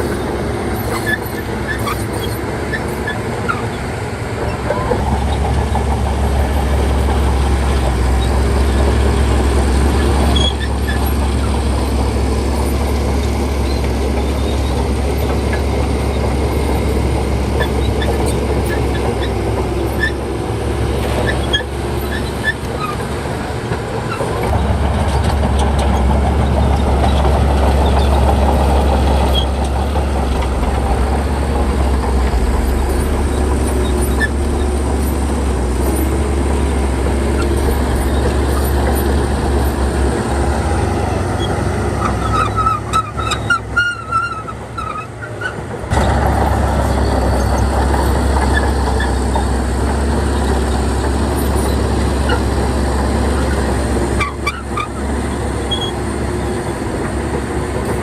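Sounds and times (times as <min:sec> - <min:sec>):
diesel machinery droning: 0:00.0 - 0:58.0
high squeaks: 0:27.0 - 0:45.6.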